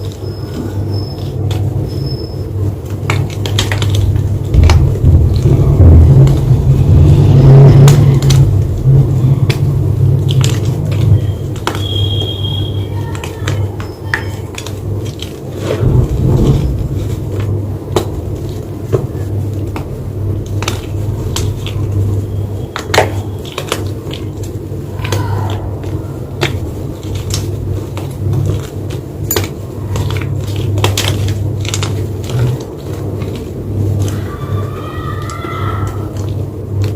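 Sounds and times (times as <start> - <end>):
low rumble: 1.5 - 12.8, 14.8 - 22.7
chalk crunching and cracking: 2.7 - 36.9.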